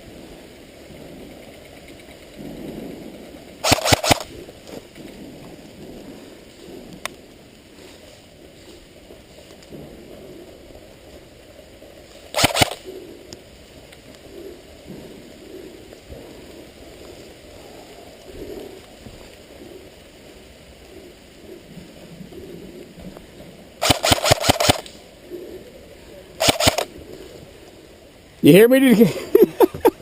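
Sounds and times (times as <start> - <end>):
airsoft gun shots: 3.6 - 4.3, 12.4 - 12.8, 23.8 - 24.9, 26.4 - 26.9.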